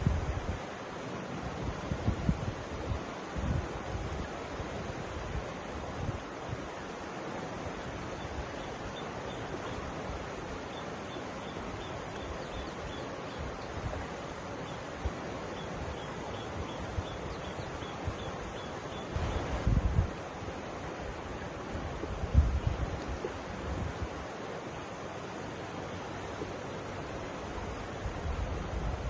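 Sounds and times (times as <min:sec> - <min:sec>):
mountain river rushing: 0:00.0 - 0:29.0.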